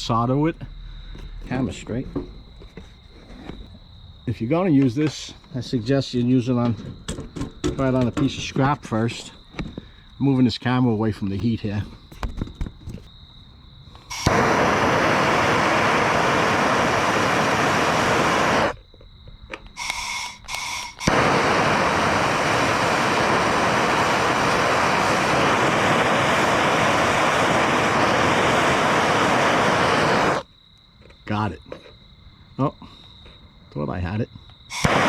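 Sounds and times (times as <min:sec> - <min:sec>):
propane torch flame rushing: 0:14.1 - 0:18.8, 0:19.8 - 0:30.5, 0:34.7 - 0:35.0.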